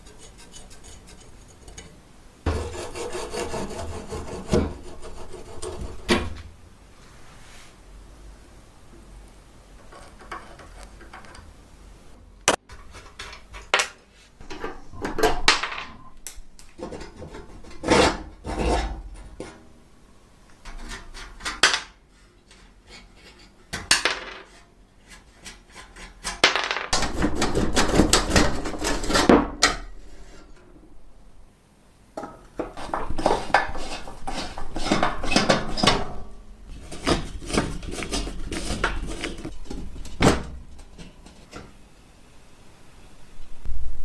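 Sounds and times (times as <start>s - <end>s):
tools scraping and clattering: 9.8s - 11.5s, 20.6s - 30.7s, 32.2s - 41.8s.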